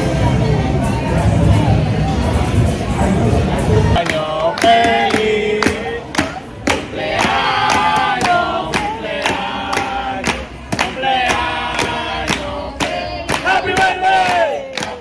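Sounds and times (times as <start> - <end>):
music with a steady beat: 4.0 - 15.0
several voices singing: 4.0 - 15.0.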